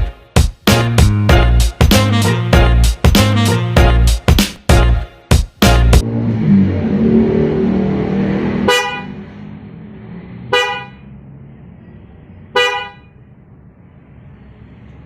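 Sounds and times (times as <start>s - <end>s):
loud steady sound: 5.6s - 11.0s
car horn toots: 8.6s - 9.2s, 10.5s - 11.0s, 12.6s - 13.1s.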